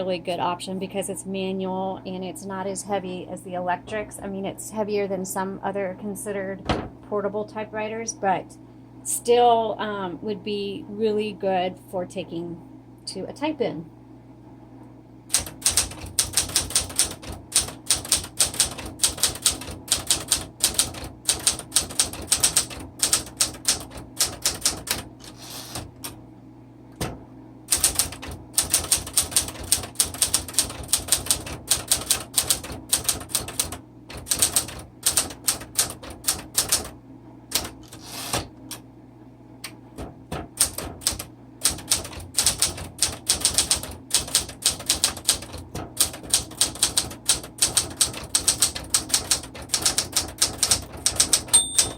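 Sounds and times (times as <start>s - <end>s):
manual typewriter typing: 15.3s - 26.1s, 27.7s - 36.9s, 37.5s - 38.5s, 40.3s - 51.9s.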